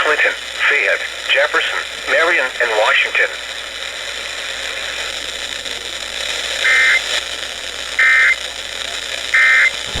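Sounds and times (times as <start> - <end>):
radio static hiss: 0.0 - 10.0
two-tone digital data bursts: 6.6 - 7.1, 8.0 - 8.4, 9.4 - 9.9.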